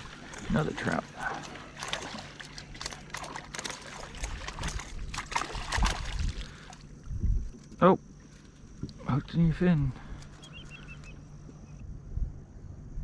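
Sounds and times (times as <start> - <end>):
clicks and knocks of gear: 0.0 - 6.8
water splashes: 0.0 - 6.9
low rumble: 0.0 - 7.6.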